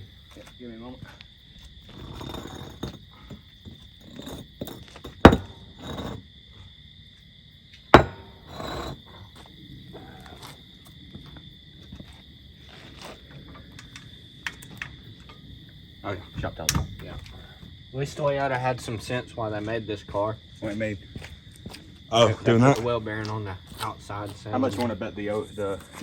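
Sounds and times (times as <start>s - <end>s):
tools and parts clattering: 1.8s - 6.2s, 8.0s - 9.2s.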